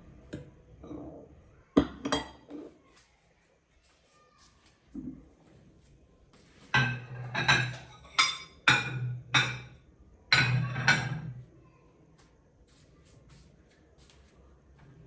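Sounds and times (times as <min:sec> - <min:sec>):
ceramic plates clinking: 0:06.7 - 0:11.4.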